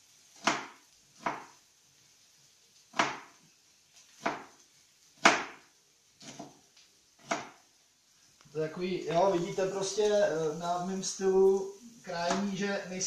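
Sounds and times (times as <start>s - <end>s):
knife chopping on cutting board: 0.4s - 1.5s, 2.9s - 3.3s, 4.2s - 4.5s, 5.2s - 5.6s, 6.2s - 6.6s, 7.2s - 7.6s.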